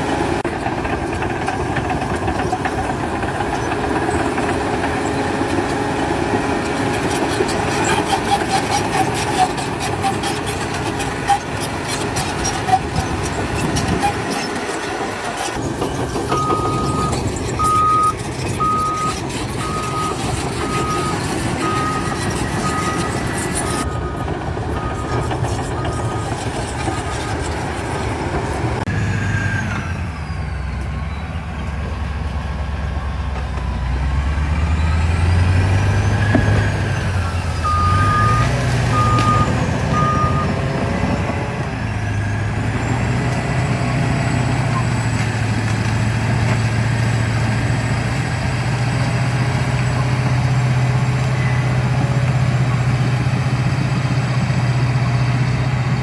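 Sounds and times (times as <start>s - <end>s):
heavy diesel engine revving: 0.0s - 26.4s, 27.6s - 56.0s
reversing alarm beeping: 16.3s - 27.4s, 35.8s - 41.5s.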